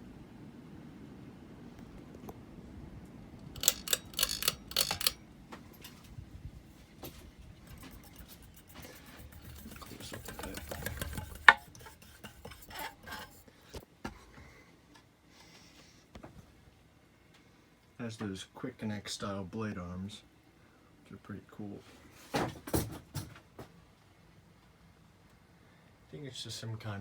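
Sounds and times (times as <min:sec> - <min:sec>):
handling clicks and rattles: 0:03.6 - 0:06.1.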